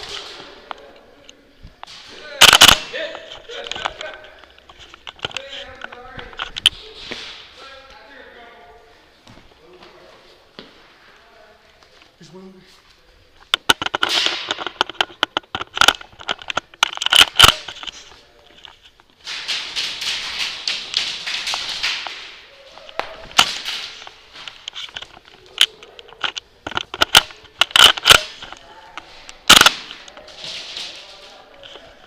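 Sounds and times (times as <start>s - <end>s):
airsoft guns firing: 1.9s - 3.0s, 29.4s - 31.1s.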